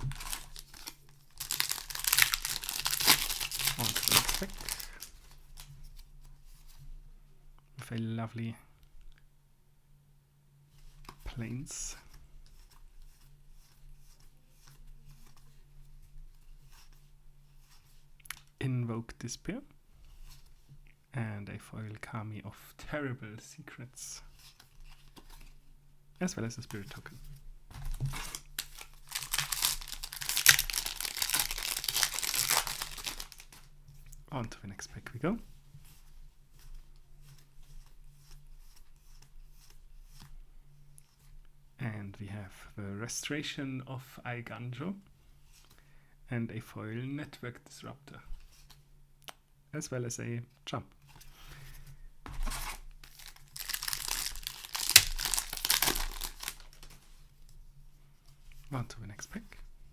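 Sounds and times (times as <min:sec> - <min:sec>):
foil wrapper crinkling and tearing: 0:00.0 - 0:05.7, 0:27.8 - 0:33.7, 0:53.0 - 0:57.0.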